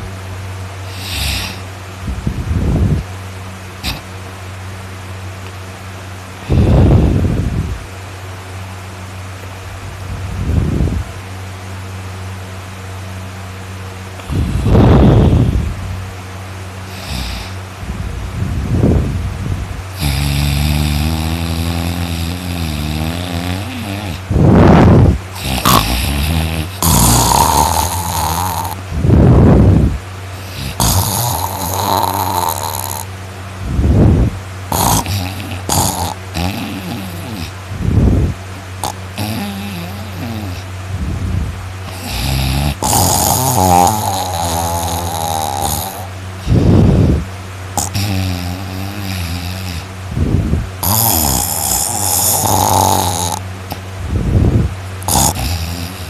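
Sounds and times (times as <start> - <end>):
harsh burst of breath: 0.8 - 1.7, 45.6 - 47.3
person snoring loudly: 0.9 - 1.7, 3.8 - 4.0, 6.4 - 7.7, 14.2 - 15.7, 16.9 - 18.0, 19.9 - 33.1, 33.7 - 40.7, 41.8 - 56.0.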